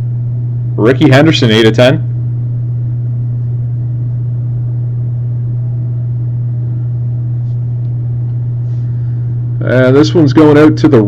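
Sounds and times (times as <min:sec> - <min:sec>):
loud steady low hum: 0:00.0 - 0:11.0.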